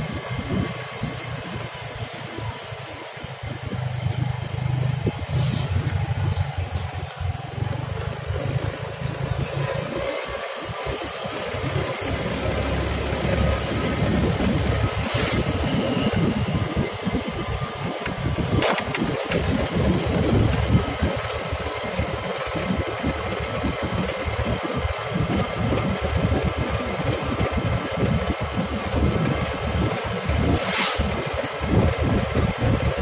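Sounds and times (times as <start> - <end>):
wind buffeting microphone: 0.0 - 2.6, 9.9 - 33.0
engine running: 0.0 - 33.0.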